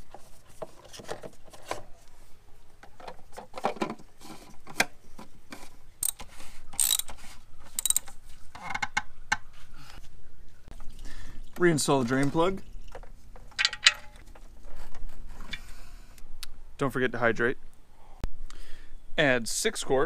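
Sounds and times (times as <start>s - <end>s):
socket ratchet clicking: 6.8s - 7.1s, 7.8s - 8.1s.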